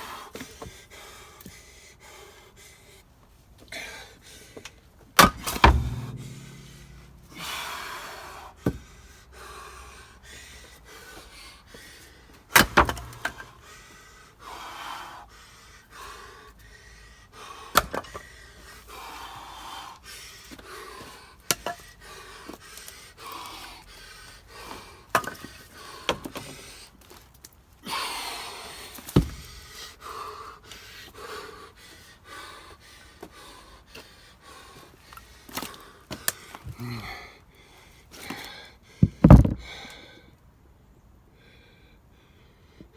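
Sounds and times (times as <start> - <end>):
person panting heavily: 0.0 - 3.0, 29.6 - 36.0
axe splitting firewood: 5.2 - 7.3, 12.5 - 13.6, 39.0 - 39.8.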